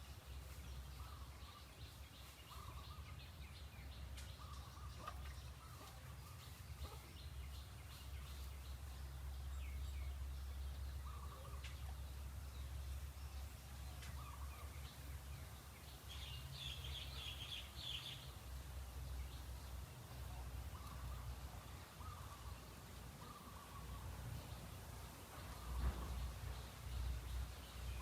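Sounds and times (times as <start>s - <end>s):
faint bird calls: 4.4s - 7.3s, 11.0s - 12.0s, 13.9s - 14.7s, 20.3s - 24.1s.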